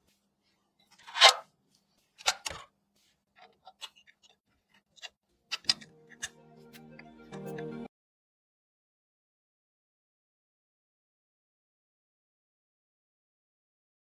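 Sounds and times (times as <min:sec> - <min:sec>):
scrape of hardware parts: 0:00.9 - 0:01.4, 0:02.2 - 0:02.7, 0:03.4 - 0:06.8
clicks and taps of small parts: 0:02.2 - 0:02.6, 0:05.0 - 0:06.3
music: 0:05.7 - 0:07.9.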